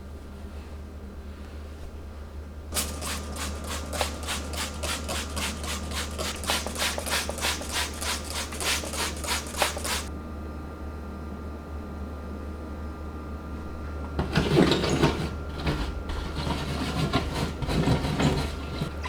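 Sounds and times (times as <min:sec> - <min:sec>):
rhythmic scrubbing strokes: 0:02.8 - 0:10.1.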